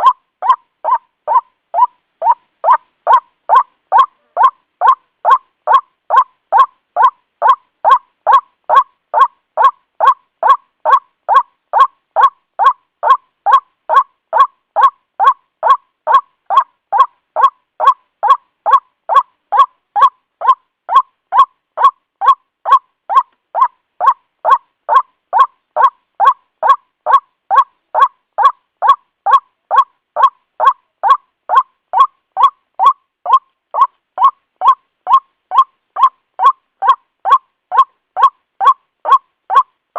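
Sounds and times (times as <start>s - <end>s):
bird calling short repeated notes: 0.0s - 39.7s.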